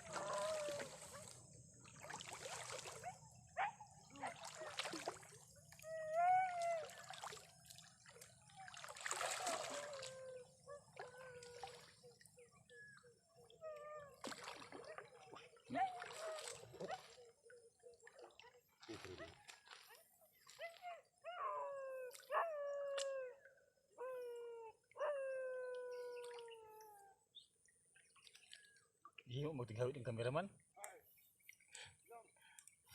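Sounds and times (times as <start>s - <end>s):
dog howling: 0.0s - 1.4s, 5.8s - 7.1s, 20.8s - 27.2s
wavering cry: 0.0s - 1.4s, 5.8s - 7.1s, 20.6s - 27.2s
water splashing and sloshing: 0.0s - 23.6s, 24.2s - 29.4s.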